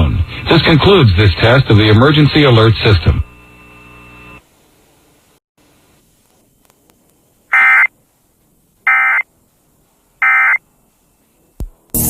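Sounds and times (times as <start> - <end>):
harsh digital data squawk: 7.5 - 7.9, 8.9 - 9.2.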